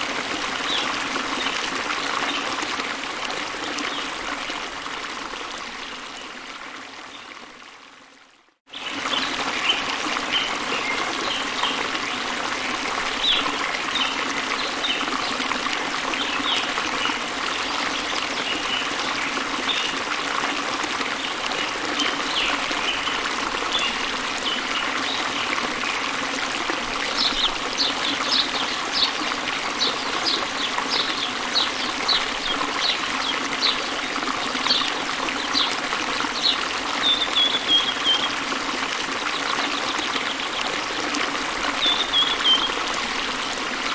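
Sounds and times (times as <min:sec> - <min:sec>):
waterfall trickling and splashing: 0:00.0 - 0:43.9
songbirds chirping: 0:27.1 - 0:38.4, 0:41.7 - 0:42.8.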